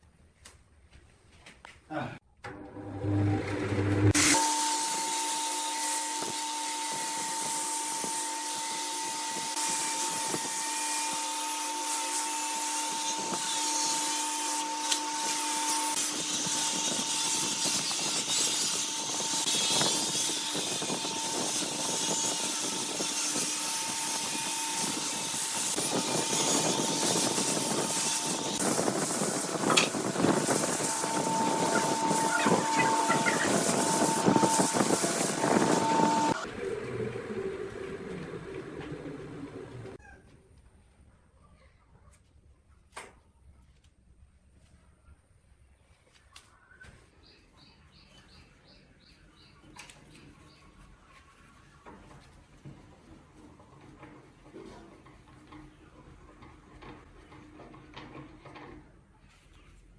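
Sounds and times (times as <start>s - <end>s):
wood lathe whine: 12.6s - 40.0s
turning tool scraping wood: 14.6s - 36.5s.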